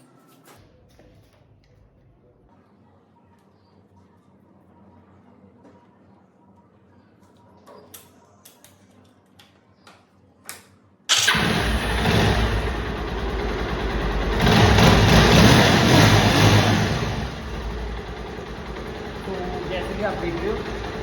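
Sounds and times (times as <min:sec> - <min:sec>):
motorcycle engine starting and running: 0:11.1 - 0:21.0.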